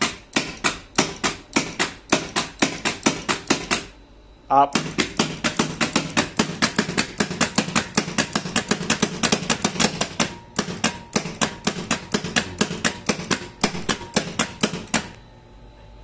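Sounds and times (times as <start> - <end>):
rapid regular clicking: 4.8 - 15.2.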